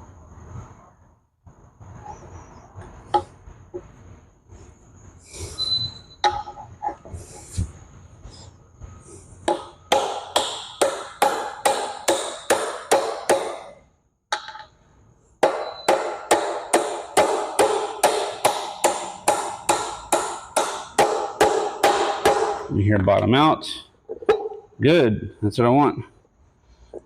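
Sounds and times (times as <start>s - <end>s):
hammer blows on metal: 15.4s - 22.7s.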